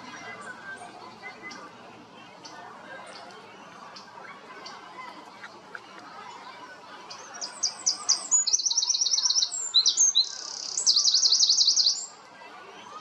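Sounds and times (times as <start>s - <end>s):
songbird singing with trills: 7.1s - 12.2s.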